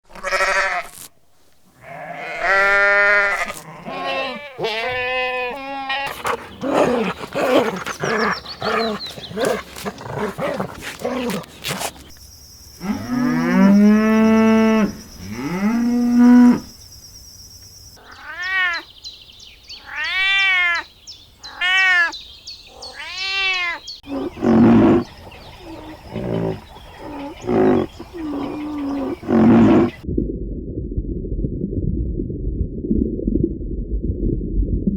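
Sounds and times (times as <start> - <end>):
high-pitched arching cries: 1.8 - 11.5, 21.5 - 25.0
cattle mooing: 1.8 - 12.0, 24.1 - 30.0
rough short animal calls: 1.8 - 12.1.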